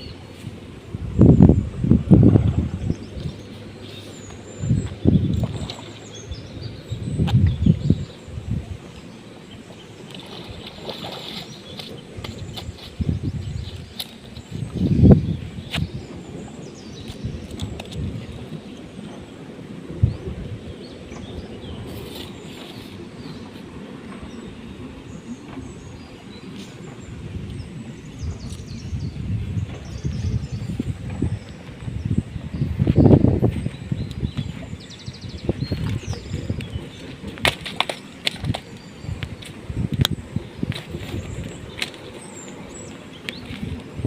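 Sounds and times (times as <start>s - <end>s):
low rumbling bursts: 0.0s - 10.9s
steady low rumble: 0.0s - 44.0s
small birds chirping: 2.8s - 19.4s, 20.0s - 44.0s.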